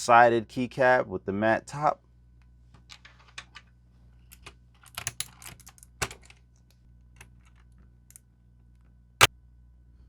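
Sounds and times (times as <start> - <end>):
plastic keyboard keys clicking: 4.4 - 6.3.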